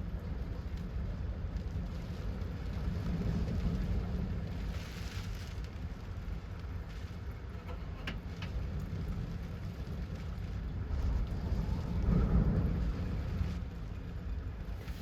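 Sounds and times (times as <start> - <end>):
wind gusting rumble: 6.1 - 15.0.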